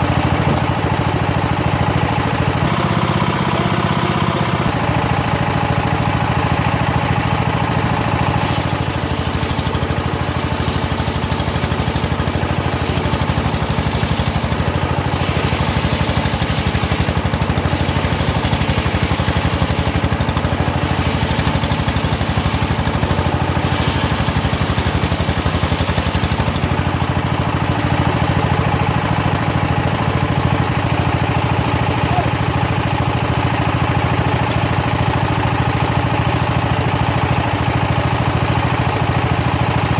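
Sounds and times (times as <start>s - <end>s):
circular saw engine running: 0.0s - 39.9s
saw blade hissing through wood: 8.4s - 26.6s.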